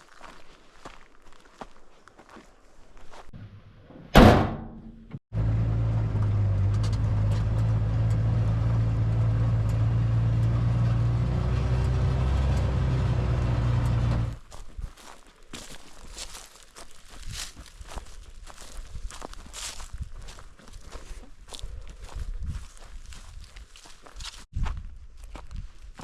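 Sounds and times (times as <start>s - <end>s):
loud bang with ringing: 4.2s - 5.2s
vehicle engine running: 5.3s - 14.4s.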